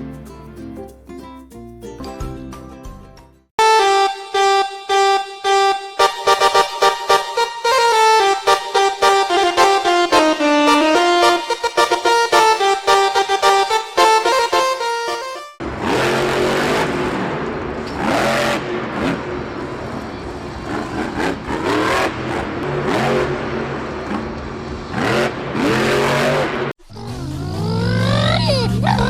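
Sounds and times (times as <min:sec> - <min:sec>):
music: 0:00.0 - 0:15.6
car engine revving: 0:06.0 - 0:29.0.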